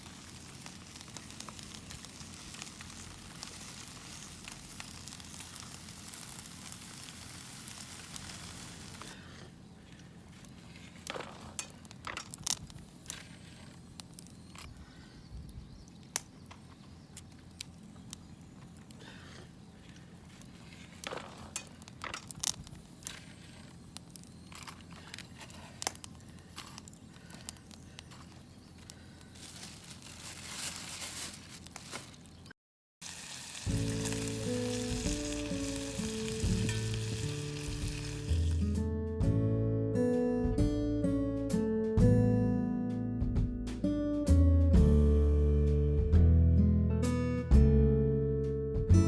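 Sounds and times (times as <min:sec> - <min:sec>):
wood fire crackling and popping: 0:00.0 - 0:14.7, 0:15.8 - 0:30.4, 0:33.0 - 0:38.8.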